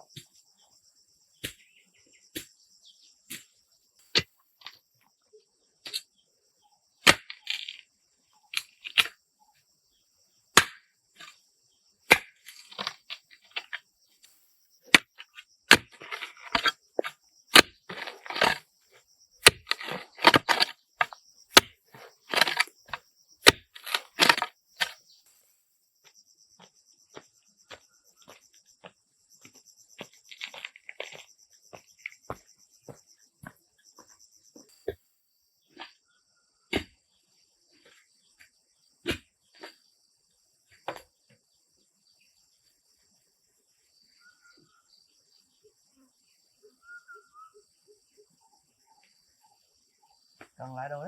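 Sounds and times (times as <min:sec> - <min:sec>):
sharp cracks and knocks: 0:10.6 - 0:11.3, 0:12.1 - 0:13.8, 0:14.9 - 0:18.6, 0:19.4 - 0:25.0.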